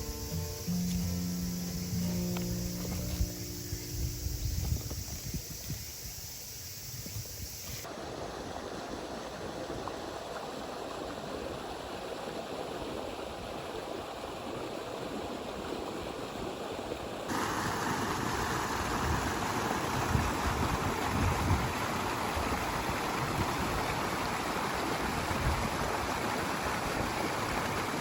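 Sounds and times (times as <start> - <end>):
river rushing: 17.3 - 28.0.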